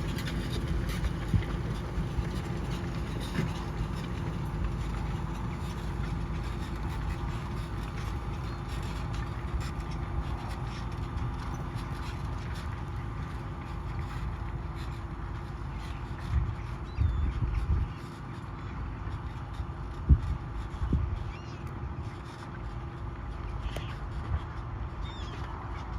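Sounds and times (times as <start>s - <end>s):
tractor diesel engine droning: 0.0s - 16.9s.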